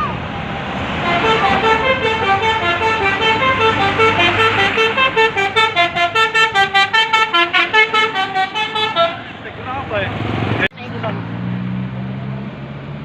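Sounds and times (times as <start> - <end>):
bus air horn melody: 1.0 - 9.4.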